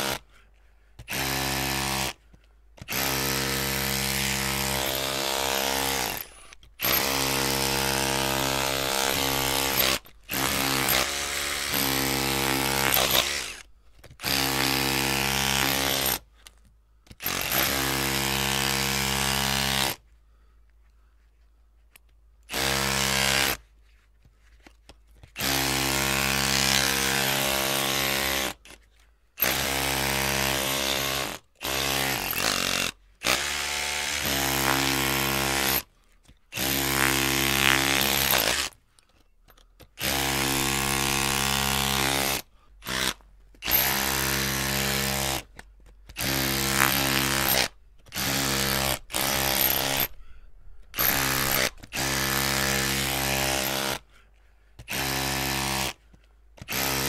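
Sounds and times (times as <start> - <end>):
electric drill whining: 2.8 - 16.2, 40.0 - 45.4, 46.2 - 50.2, 51.0 - 54.0.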